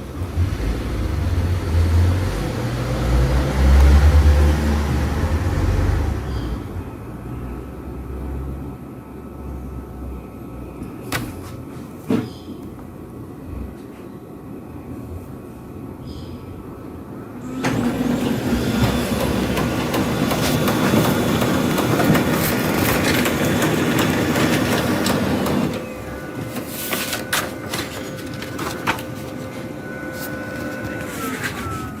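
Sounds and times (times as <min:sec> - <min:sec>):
printer whine: 0:17.0 - 0:32.0
printer clicks: 0:17.6 - 0:31.6
printer motor and paper feed: 0:17.6 - 0:32.0.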